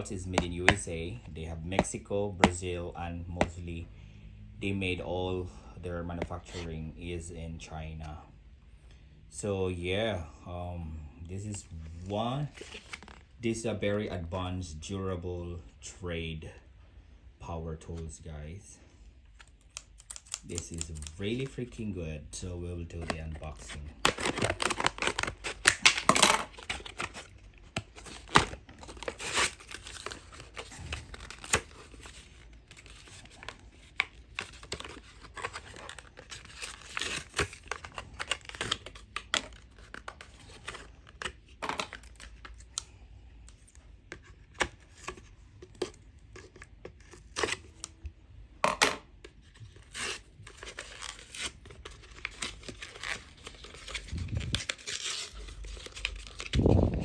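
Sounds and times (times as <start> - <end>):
packaging tearing and crinkling: 19.4 - 21.5, 23.0 - 42.8, 49.6 - 57.0.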